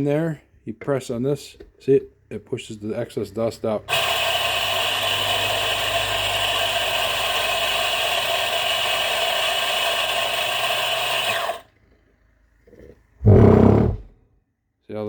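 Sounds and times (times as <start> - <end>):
coffee grinder motor whirring: 3.9 - 11.8.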